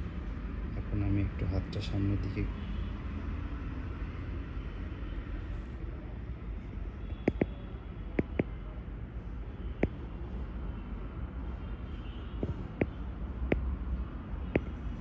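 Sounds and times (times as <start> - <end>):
sharp short clicks: 7.2 - 7.5, 8.2 - 8.5.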